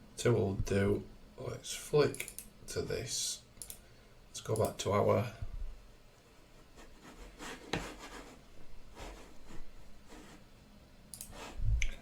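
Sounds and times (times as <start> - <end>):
computer mouse clicks: 2.1 - 2.5, 3.6 - 3.8, 11.1 - 12.0
computer mouse sliding: 11.2 - 11.6.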